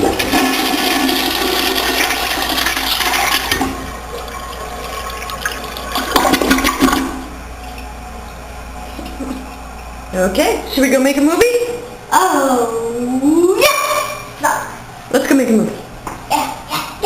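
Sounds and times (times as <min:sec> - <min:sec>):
toilet flushing: 0:00.0 - 0:07.4.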